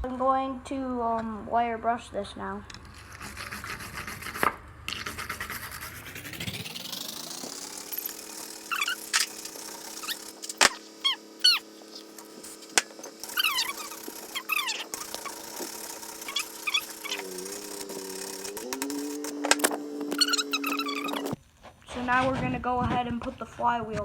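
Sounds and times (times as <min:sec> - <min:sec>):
wire brush whirring on metal: 0:02.7 - 0:21.4
short falling squeaks: 0:08.7 - 0:12.1, 0:13.2 - 0:15.4, 0:20.1 - 0:21.4.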